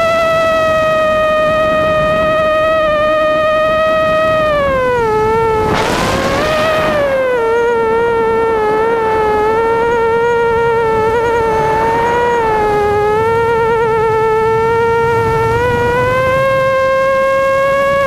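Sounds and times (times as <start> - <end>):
quadcopter buzzing whine: 0.0 - 18.0
rushing air noise: 5.3 - 7.6.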